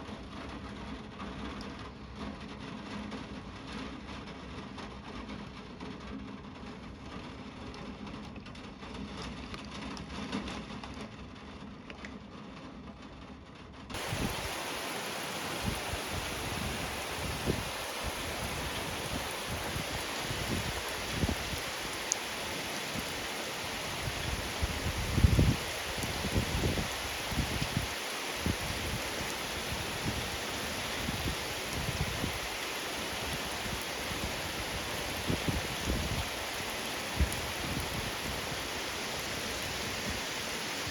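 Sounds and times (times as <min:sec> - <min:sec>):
thunder rumbles: 0:14.0 - 0:40.1
rain hissing: 0:14.0 - 0:40.9.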